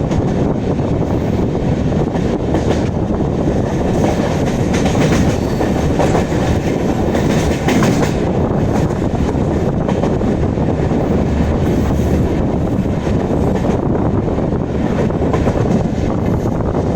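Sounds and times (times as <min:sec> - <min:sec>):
train wheels rumbling on rail: 0:00.0 - 0:16.9
wheels clattering over rail joints: 0:03.7 - 0:12.3.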